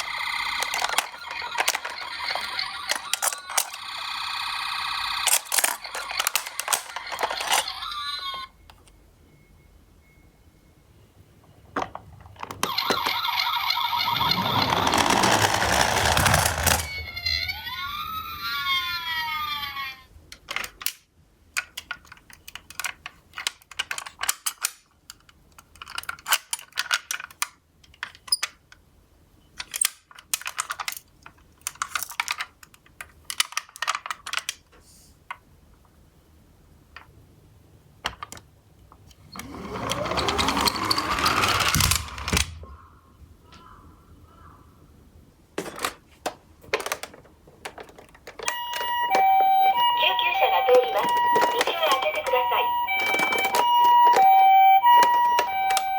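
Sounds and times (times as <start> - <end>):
toy cars rattling down a slope: 0.0 - 8.2, 12.6 - 17.8, 39.4 - 42.4
siren wailing: 12.7 - 18.5, 48.4 - 55.9.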